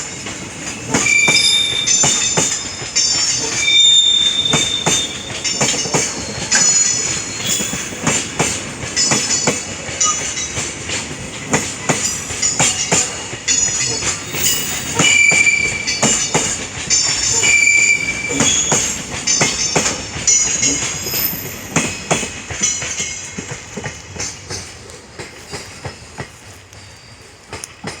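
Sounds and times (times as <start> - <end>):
train wheels clacking over rail joints: 0.0 - 28.0
high-pitched wheel squeals: 0.9 - 8.2, 13.9 - 19.0, 20.6 - 21.8.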